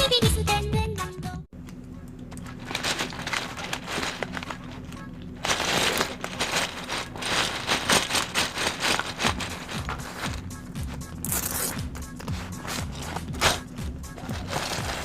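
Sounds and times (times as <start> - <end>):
faint steady hum: 1.5 - 15.0
packaging rustling and crinkling: 2.4 - 15.0.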